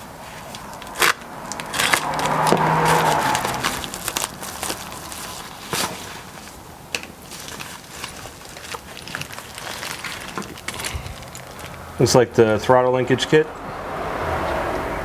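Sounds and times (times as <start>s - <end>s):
packaging crinkling and rustling: 0.1s - 11.9s.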